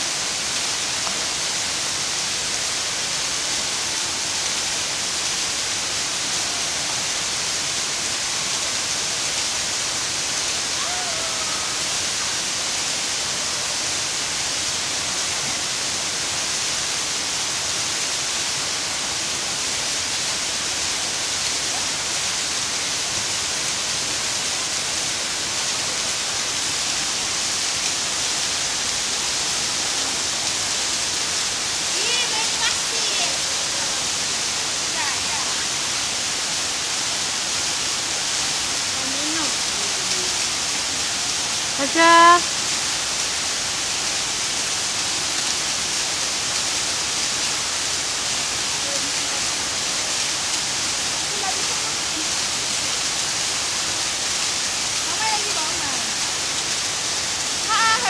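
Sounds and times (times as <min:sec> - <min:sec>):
waterfall rushing: 0:00.0 - 0:58.0.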